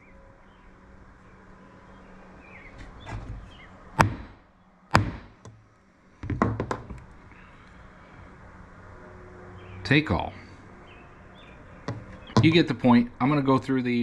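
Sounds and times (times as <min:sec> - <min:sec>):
hammer striking metal punch: 0:04.0 - 0:05.4.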